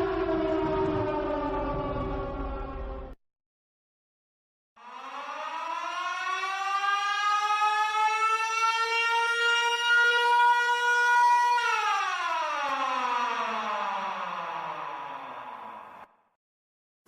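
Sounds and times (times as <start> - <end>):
siren winding up and down: 4.8 - 16.2.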